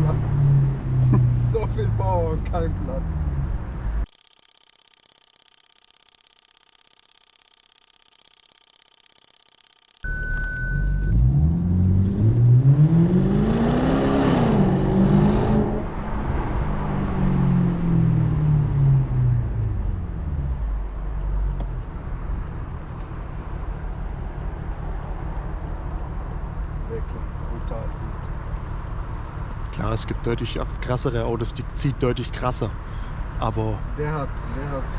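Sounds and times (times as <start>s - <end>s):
car engine accelerating hard: 10.7s - 34.9s.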